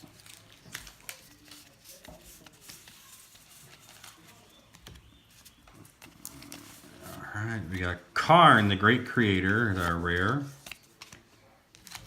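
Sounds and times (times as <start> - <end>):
cards being flipped: 9.5 - 12.0.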